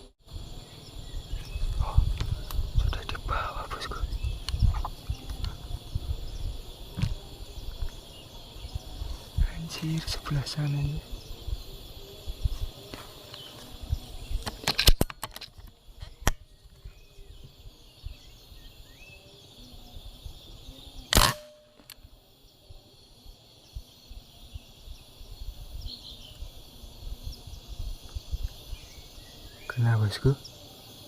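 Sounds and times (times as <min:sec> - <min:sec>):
insects buzzing: 0:00.0 - 0:31.0
sharp clicks: 0:14.4 - 0:16.4, 0:21.1 - 0:22.1
air rifle shot: 0:21.1 - 0:21.9.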